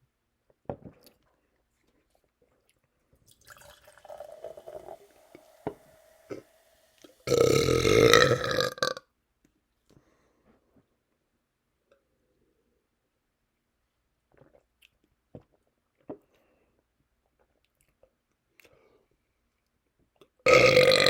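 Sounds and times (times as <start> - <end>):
man burping loudly: 7.2 - 9.0, 20.5 - 21.0.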